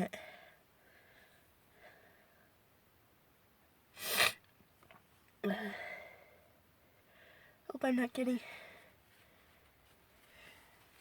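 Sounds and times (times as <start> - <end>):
person sneezing: 4.0 - 4.4.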